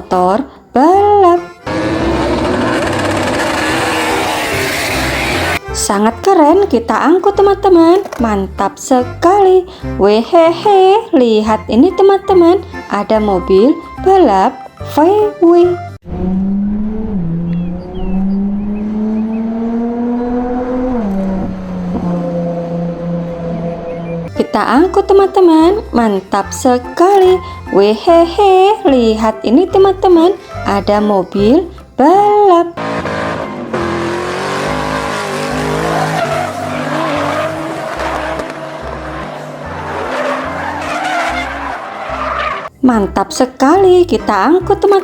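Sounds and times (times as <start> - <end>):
race car engine revving: 1.4 - 5.7, 16.0 - 24.3, 32.8 - 42.7
tyres squealing and skidding: 1.5 - 5.7, 32.8 - 42.7.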